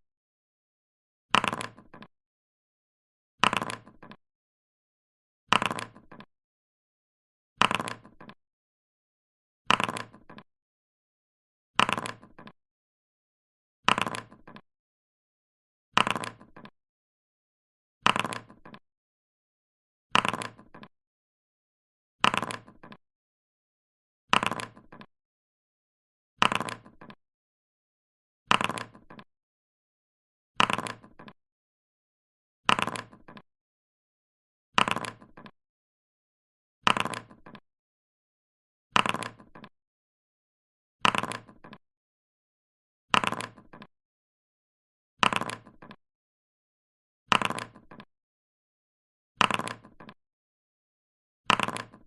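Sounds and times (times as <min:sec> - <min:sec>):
dice clattering and rolling: 0:01.4 - 0:02.1, 0:03.4 - 0:04.2, 0:05.5 - 0:06.3, 0:07.6 - 0:08.4, 0:09.7 - 0:10.4, 0:11.8 - 0:12.5, 0:13.9 - 0:14.6, 0:16.0 - 0:16.7, 0:18.1 - 0:18.8, 0:20.2 - 0:20.9, 0:22.2 - 0:23.0, 0:24.4 - 0:25.1, 0:26.4 - 0:27.2, 0:28.5 - 0:29.2, 0:30.6 - 0:31.4, 0:32.7 - 0:33.4, 0:34.8 - 0:35.5, 0:36.9 - 0:37.6, 0:39.0 - 0:39.7, 0:41.1 - 0:41.8, 0:43.2 - 0:43.9, 0:45.2 - 0:46.0, 0:47.3 - 0:48.1, 0:49.4 - 0:50.2, 0:51.5 - 0:52.0.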